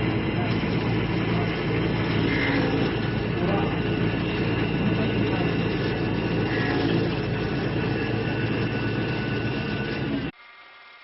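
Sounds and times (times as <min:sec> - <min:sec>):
motor hum: 0:00.0 - 0:10.7
wood lathe machine drone: 0:00.0 - 0:11.0.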